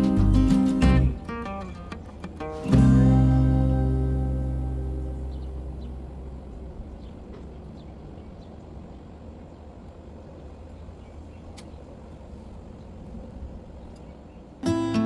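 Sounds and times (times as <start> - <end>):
low background rumble: 0.0 - 11.5.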